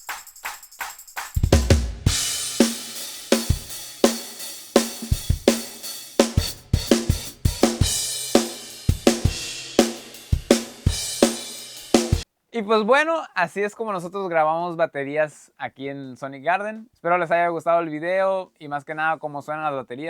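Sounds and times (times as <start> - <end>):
kick drum: 0.0 - 2.4, 3.5 - 3.8, 4.9 - 8.2, 8.9 - 9.6
hi-hat and cymbals: 0.0 - 12.2
loud cymbal crash: 1.2 - 12.2.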